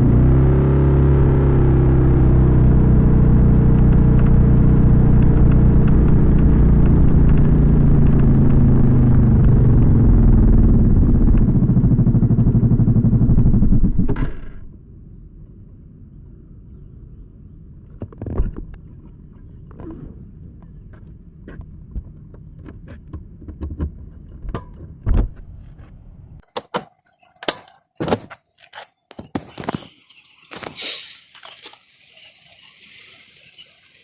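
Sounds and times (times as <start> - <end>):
scooter engine running: 0.0 - 14.7.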